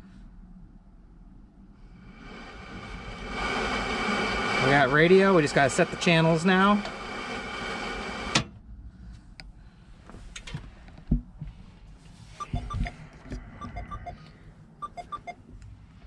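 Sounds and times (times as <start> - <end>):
short electronic beeps of radio: 12.4 - 13.0, 13.6 - 14.2, 14.8 - 15.4.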